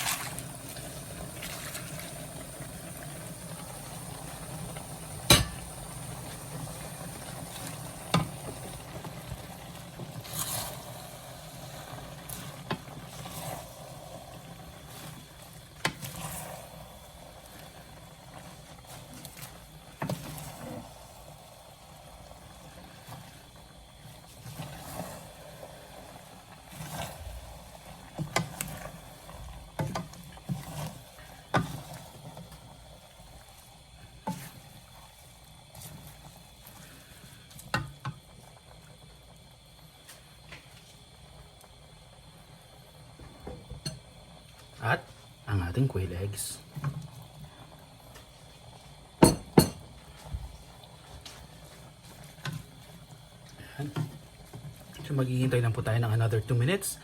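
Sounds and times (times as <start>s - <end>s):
food sizzling in a pan: 0.0s - 57.0s.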